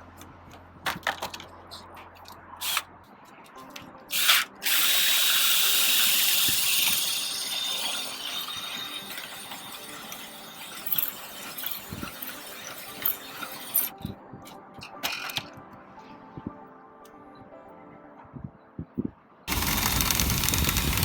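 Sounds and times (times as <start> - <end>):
power drill spinning vent brush: 4.1 - 13.9, 19.5 - 21.0.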